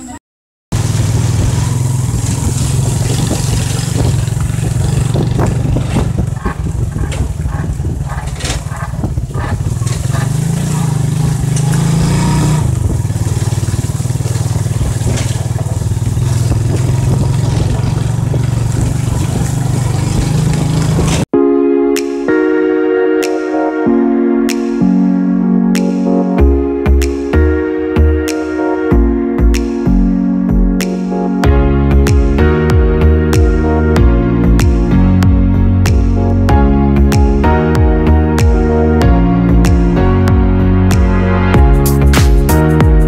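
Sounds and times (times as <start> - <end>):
motorcycle engine running: 0.7 - 21.3, 31.4 - 43.0.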